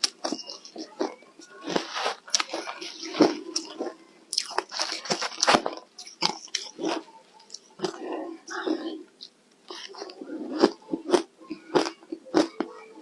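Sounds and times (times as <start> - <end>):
ice crunching while chewed: 0.0 - 8.8.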